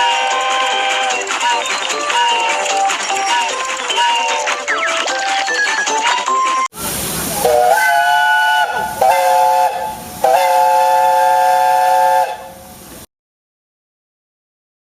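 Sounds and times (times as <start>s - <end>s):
steam locomotive whistle: 0.0s - 1.2s, 6.8s - 12.8s
steam hissing: 6.7s - 13.1s.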